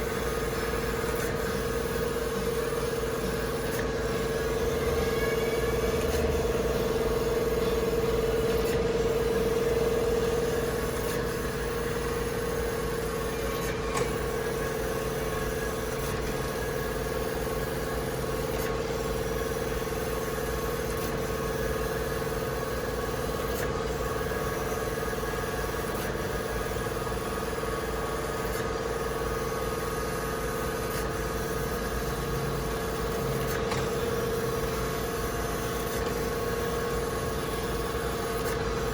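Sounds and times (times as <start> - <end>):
grinder machine hum: 0.0 - 18.6.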